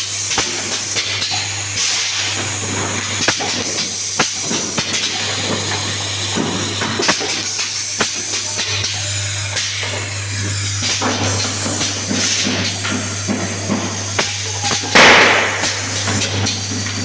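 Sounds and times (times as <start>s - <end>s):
compressed air hissing: 11.8s - 16.8s.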